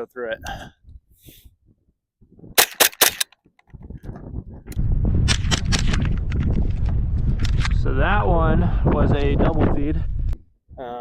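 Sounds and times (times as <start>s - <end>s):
rifle firing rapidly: 2.6s - 3.3s.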